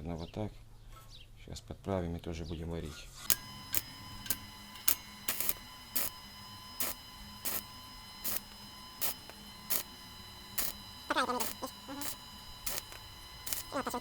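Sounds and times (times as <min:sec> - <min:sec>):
faint steady hum: 0:03.3 - 0:14.0.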